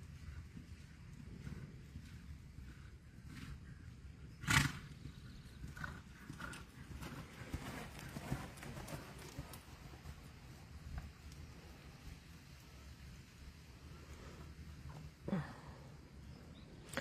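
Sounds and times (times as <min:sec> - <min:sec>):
soft hoofbeats: 0:00.0 - 0:17.0
horse snorting: 0:04.4 - 0:04.9.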